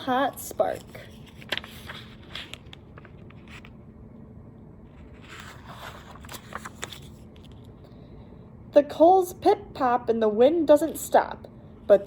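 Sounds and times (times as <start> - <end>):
book handling noises: 0.2 - 3.8, 4.9 - 7.8
paper rustling: 0.4 - 3.8, 4.9 - 7.7.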